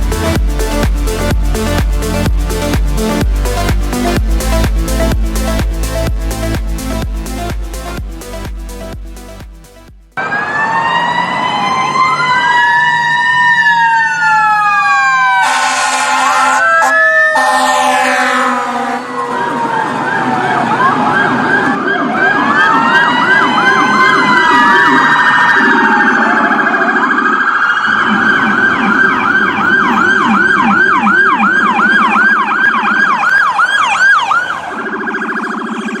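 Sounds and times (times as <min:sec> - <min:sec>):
electronic emergency-vehicle siren: 0:10.2 - 0:36.0.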